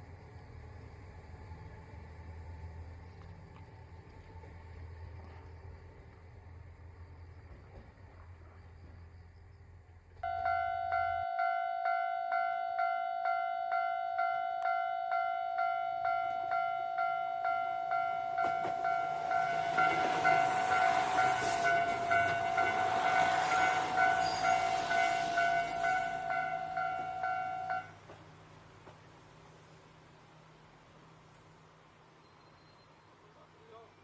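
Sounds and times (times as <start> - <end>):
train passing: 0.0 - 34.0
level-crossing warning bell: 10.2 - 28.0.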